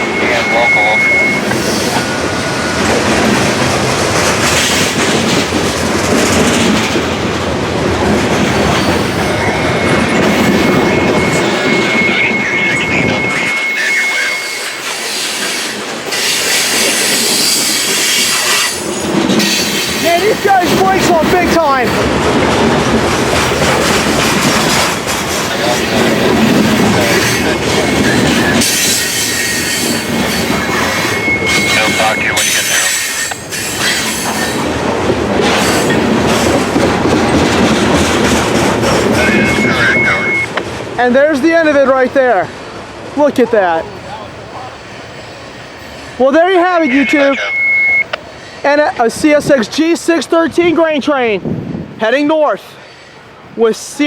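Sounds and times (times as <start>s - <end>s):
train brakes squealing: 0.0s - 2.9s, 8.5s - 20.7s, 26.9s - 34.7s, 39.2s - 40.5s, 44.6s - 48.6s
freight train rolling past: 0.0s - 54.0s
wheels clacking over rail joints: 1.2s - 12.2s, 14.8s - 43.6s.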